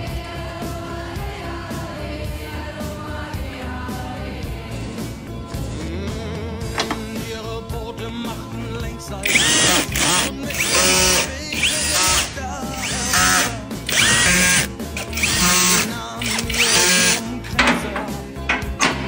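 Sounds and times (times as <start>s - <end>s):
music: 0.0s - 19.0s
electric drill motor whining: 9.2s - 17.3s.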